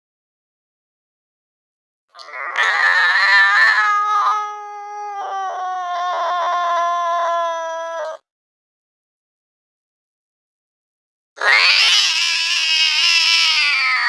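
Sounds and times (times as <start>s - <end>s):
angry cat yowling: 2.2s - 8.3s, 11.4s - 14.0s.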